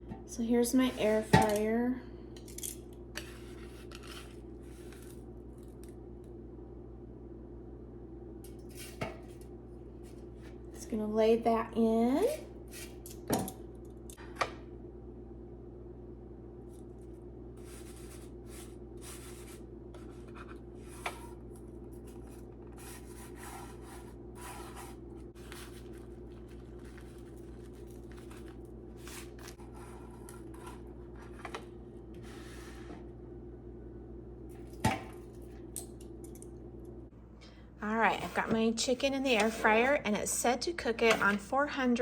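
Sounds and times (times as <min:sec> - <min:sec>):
steady low hum: 0:00.0 - 0:42.0
rustling and scraping of food: 0:02.5 - 0:05.8, 0:16.7 - 0:33.1.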